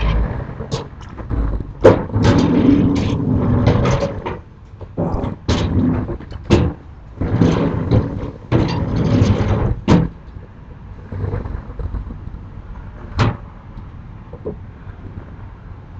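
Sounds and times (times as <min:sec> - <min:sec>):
shutters banging shut: 0:00.0 - 0:10.2, 0:13.1 - 0:13.5
shutters rattling along tracks: 0:00.0 - 0:15.3.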